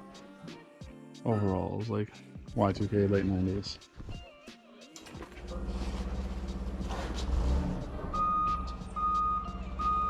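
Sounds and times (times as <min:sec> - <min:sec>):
heavy vehicle engine rumbling: 0:05.4 - 0:10.0
reversing alarm beeps: 0:08.1 - 0:10.0.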